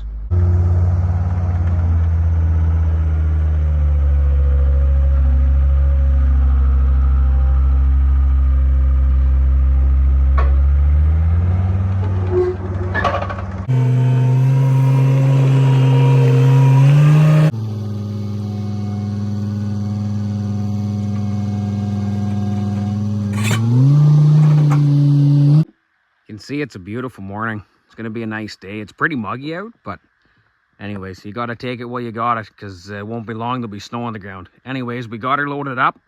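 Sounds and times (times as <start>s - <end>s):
machine engine revving: 0.1s - 25.7s.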